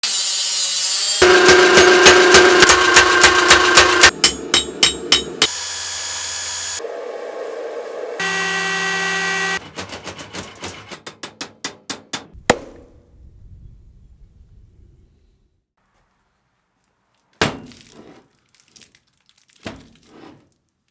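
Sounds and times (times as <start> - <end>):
power tool running: 0.0 - 4.2, 5.5 - 9.6
hammer strikes: 1.2 - 5.6, 9.6 - 13.0.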